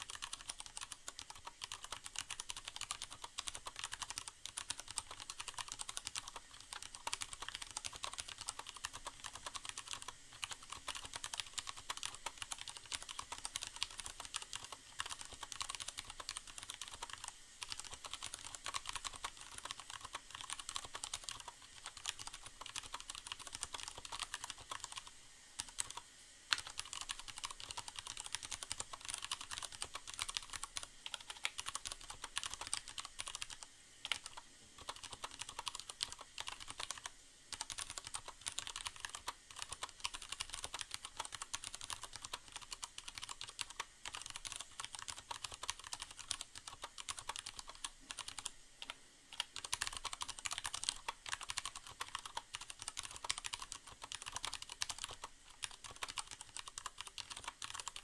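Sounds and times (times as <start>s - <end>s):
rain hiss: 0.0s - 58.0s.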